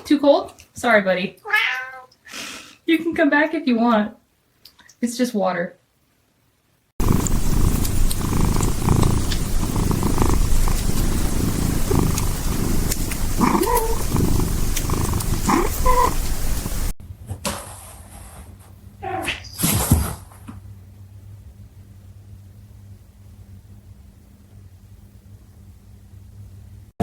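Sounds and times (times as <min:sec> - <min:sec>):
quiet cat cries: 0:01.4 - 0:02.2, 0:13.5 - 0:14.1
cat purring loudly: 0:07.0 - 0:17.0
cat chirp-like meows: 0:13.5 - 0:14.1.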